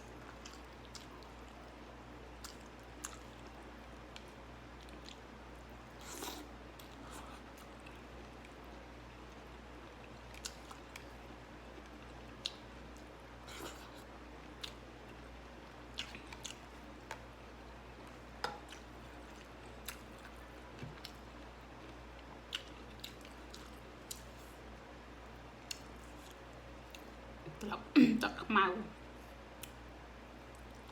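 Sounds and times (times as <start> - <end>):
low steady hum: 0.0 - 30.9
person chewing food: 0.1 - 27.5.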